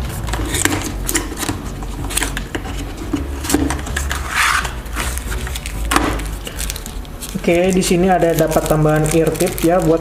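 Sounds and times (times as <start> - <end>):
packaging rustle: 3.9 - 10.0.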